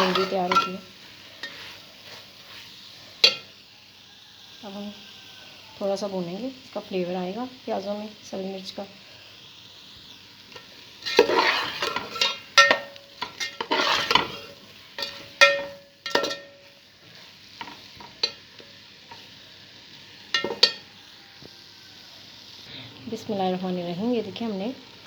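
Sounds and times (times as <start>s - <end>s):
spoon scraping a pan: 0.0s - 3.6s, 10.5s - 19.3s, 20.3s - 20.9s
frying in hot oil sizzle: 0.0s - 25.0s.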